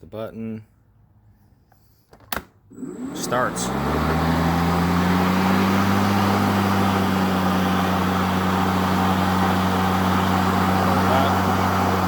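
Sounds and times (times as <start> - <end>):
electric lawn mower humming: 2.7 - 12.0.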